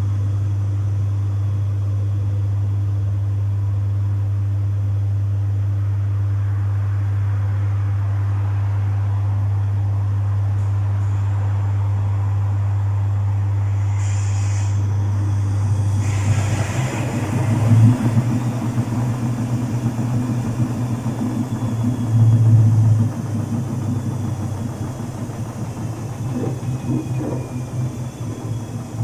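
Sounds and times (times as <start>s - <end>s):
short hissing bursts: 13.6s - 15.0s
washing machine running: 14.9s - 29.0s.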